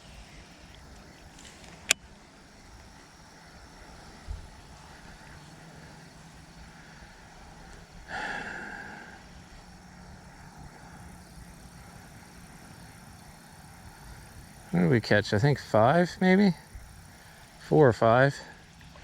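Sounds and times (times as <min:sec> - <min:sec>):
faint low hum: 0:00.0 - 0:19.0
line running off reel: 0:00.0 - 0:19.0.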